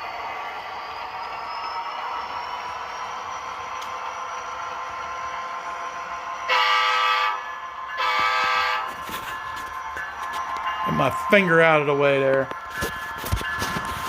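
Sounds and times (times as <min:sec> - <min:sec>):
model locomotive running: 0:00.0 - 0:14.0
locomotive horn blasts: 0:06.5 - 0:07.4, 0:08.0 - 0:09.0.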